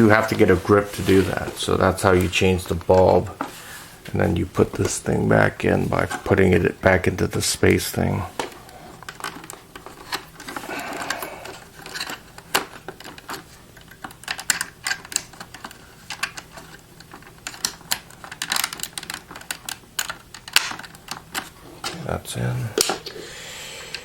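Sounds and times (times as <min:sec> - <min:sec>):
plastic parts clicking: 0:08.4 - 0:22.1, 0:22.8 - 0:23.2.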